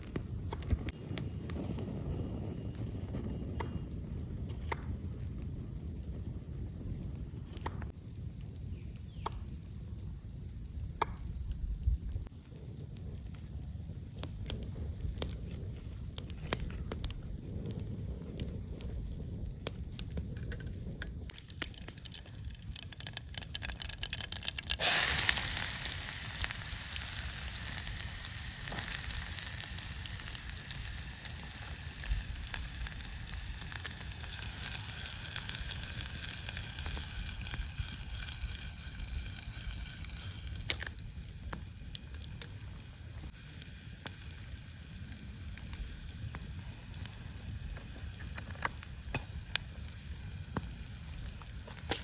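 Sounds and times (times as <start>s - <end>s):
food sizzling in hot oil: 24.7s - 40.8s.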